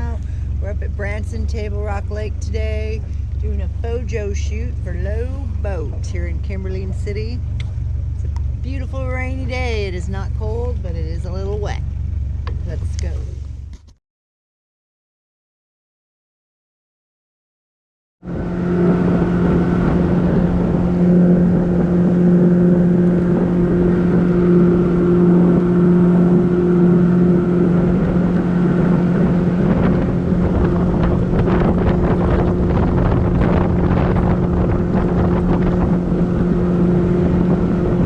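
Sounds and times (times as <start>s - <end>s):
boat motor running: 0.0s - 14.0s, 18.2s - 38.0s
wind noise on microphone: 18.2s - 38.0s.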